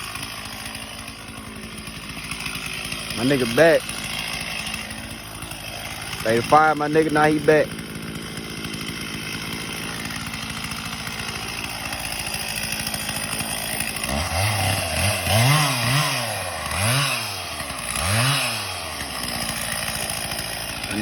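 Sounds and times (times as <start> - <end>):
chainsaw idling and revving: 0.0 - 21.0.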